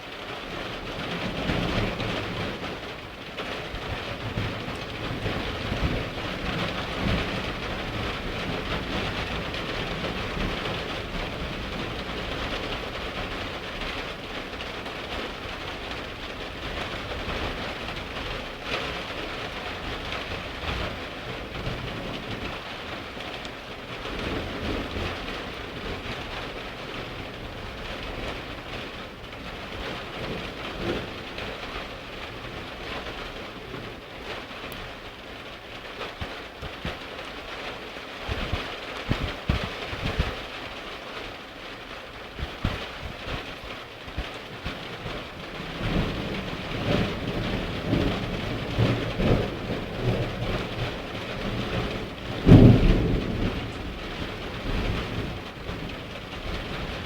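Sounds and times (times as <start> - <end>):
rain falling: 0.0 - 57.0
thunder rolling: 44.1 - 57.0.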